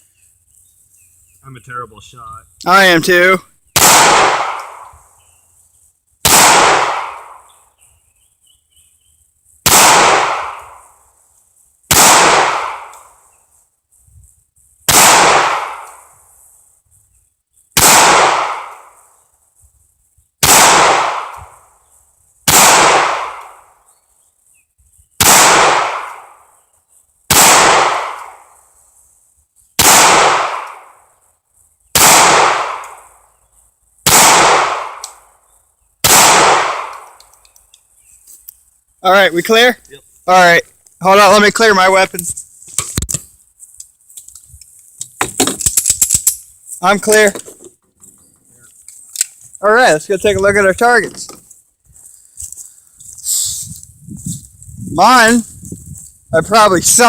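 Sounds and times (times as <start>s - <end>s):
pistol shots: 3.7s - 4.9s, 6.2s - 7.5s, 9.6s - 10.9s, 11.9s - 13.1s, 14.9s - 16.0s, 17.8s - 19.0s, 20.4s - 21.6s, 22.5s - 23.7s, 25.2s - 26.5s, 27.3s - 28.5s, 29.8s - 31.0s, 31.9s - 33.2s, 34.0s - 35.3s, 36.0s - 37.2s.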